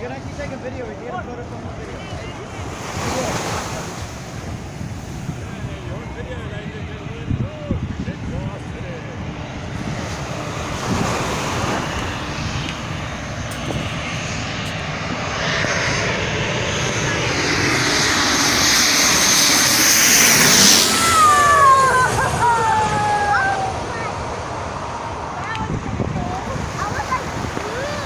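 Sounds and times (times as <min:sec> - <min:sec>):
airliner engines overhead: 0:00.0 - 0:28.0
high engine whine: 0:00.0 - 0:28.0.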